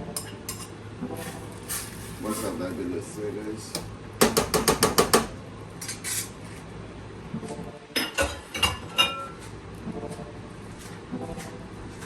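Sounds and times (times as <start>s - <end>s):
utensil clinking against cookware: 8.0s - 9.4s.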